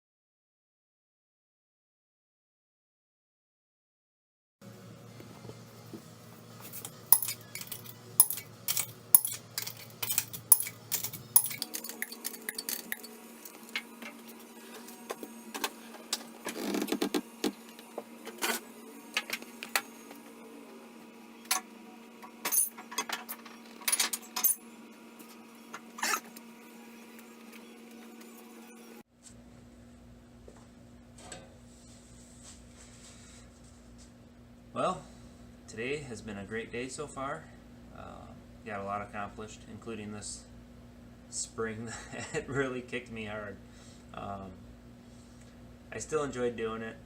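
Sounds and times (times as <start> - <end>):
steady low hum: 4.6 - 22.6, 29.2 - 47.0
metal tools clinking: 6.6 - 13.1.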